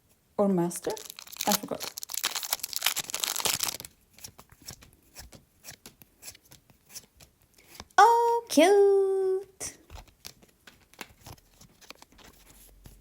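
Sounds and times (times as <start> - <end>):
foil wrapper crinkling and tearing: 0.9 - 4.8
cards sliding and flipping: 3.8 - 8.0, 9.9 - 13.0.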